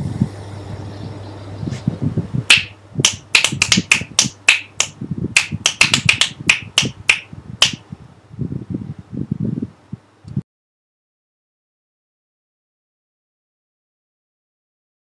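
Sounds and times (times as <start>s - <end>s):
sharp clicks: 2.5s - 7.8s.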